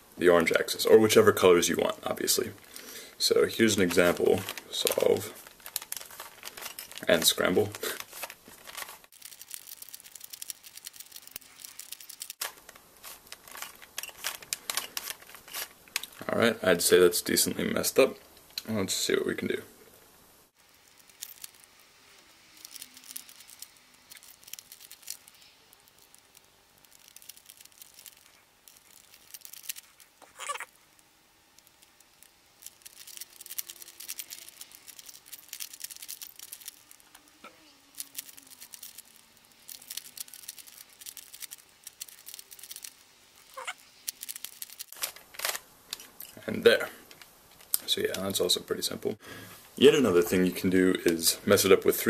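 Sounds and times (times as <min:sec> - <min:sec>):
puzzle cube clicking and rasping: 0:02.2 - 0:16.2, 0:20.8 - 0:30.8, 0:31.6 - 0:46.1.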